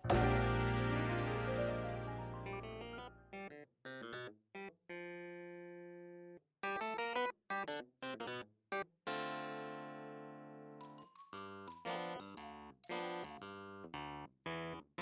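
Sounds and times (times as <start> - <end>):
plucked guitar-like music: 0.0 - 3.2.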